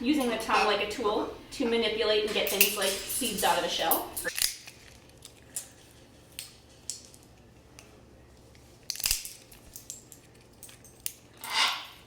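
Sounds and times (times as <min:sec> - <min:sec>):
parrot cracking seeds: 0:04.2 - 0:08.0, 0:08.8 - 0:11.8.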